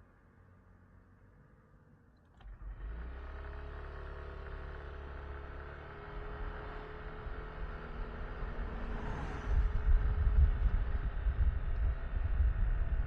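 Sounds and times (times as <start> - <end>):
wind buffeting microphone: 9.4 - 13.0.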